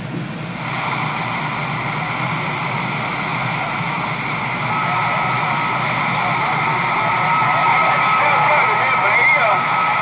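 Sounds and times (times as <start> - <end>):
radio static hiss: 0.6 - 10.0
thin steady whistle: 3.5 - 8.8.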